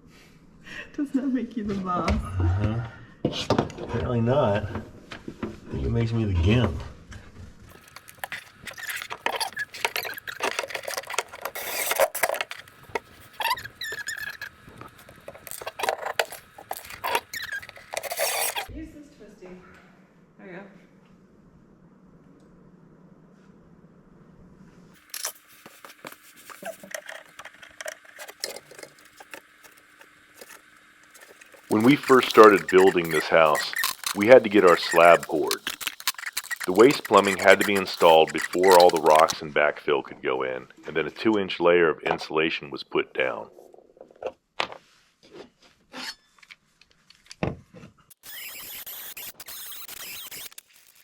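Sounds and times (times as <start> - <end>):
tools clicking and scraping: 7.7 - 18.7, 25.0 - 39.4, 48.1 - 51.0.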